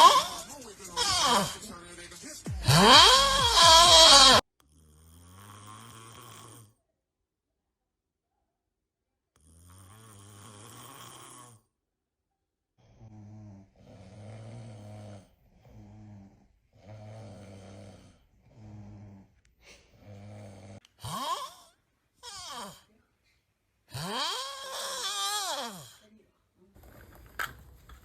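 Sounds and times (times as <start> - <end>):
person snoring: 0.0 - 6.8, 9.4 - 11.7, 12.8 - 22.9, 23.9 - 26.0.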